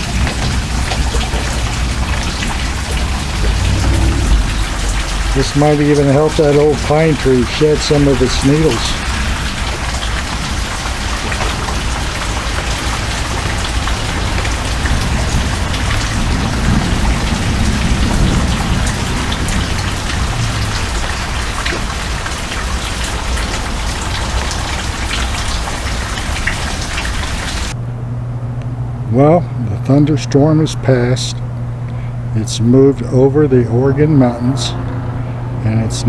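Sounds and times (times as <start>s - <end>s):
low rumble: 0.0s - 25.4s
heavy rain: 0.0s - 27.8s.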